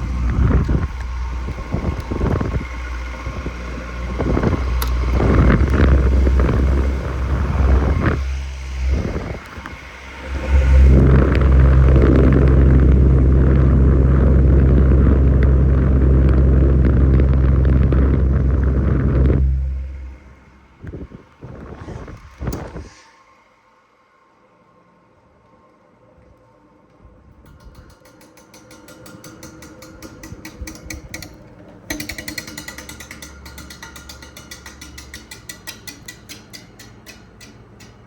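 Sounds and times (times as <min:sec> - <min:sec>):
fan motor hum: 0:00.0 - 0:23.1, 0:27.3 - 0:38.0
air rushing over microphone: 0:00.0 - 0:23.6.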